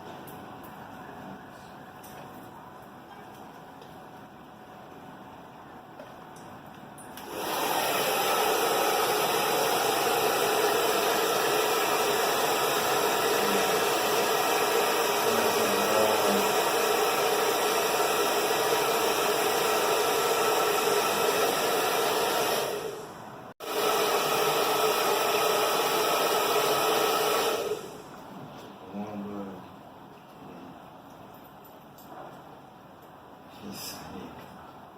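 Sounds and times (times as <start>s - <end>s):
hair dryer blowing: 7.2s - 28.1s.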